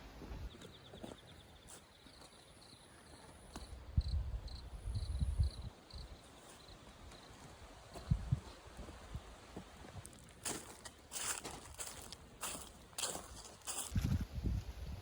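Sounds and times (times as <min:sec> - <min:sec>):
crickets chirping: 0:02.1 - 0:06.7.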